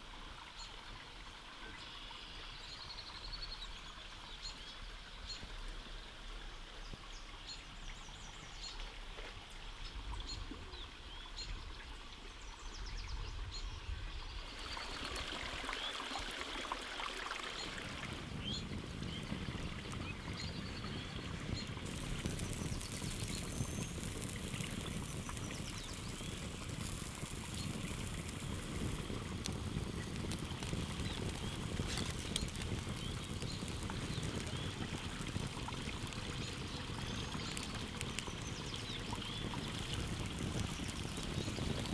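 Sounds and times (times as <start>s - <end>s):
running water rushing: 14.5s - 41.9s
birds chirping: 18.3s - 41.9s.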